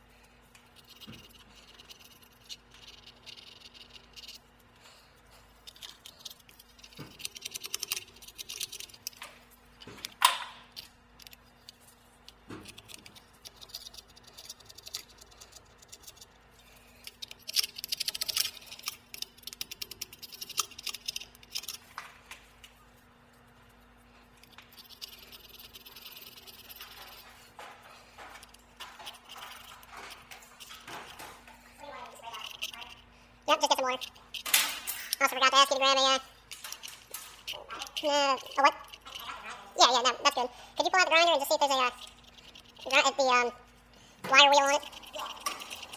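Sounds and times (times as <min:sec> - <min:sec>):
faint steady hum: 0:00.0 - 0:45.9
small metal objects clinking: 0:44.3 - 0:45.9.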